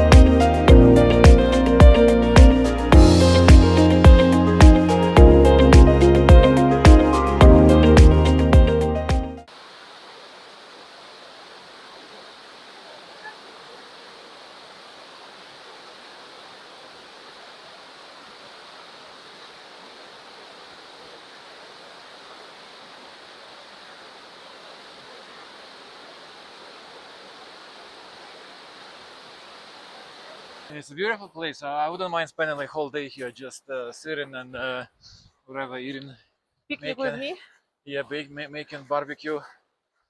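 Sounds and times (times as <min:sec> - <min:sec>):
waterfall rushing: 0:09.4 - 0:30.7.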